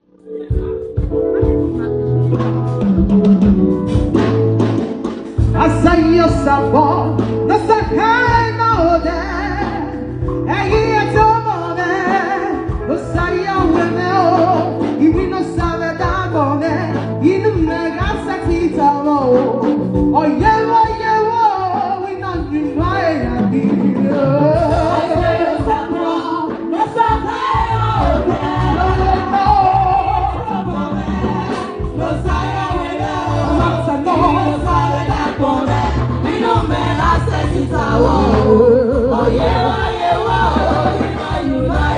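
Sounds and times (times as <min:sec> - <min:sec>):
band accompaniment with bass: 0:00.0 - 0:41.9
voices singing: 0:23.4 - 0:41.9.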